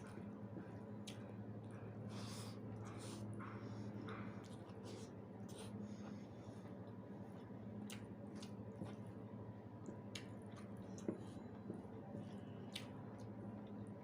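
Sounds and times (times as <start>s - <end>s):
steady low hum: 0.0s - 14.0s
wet chewing: 7.8s - 9.1s.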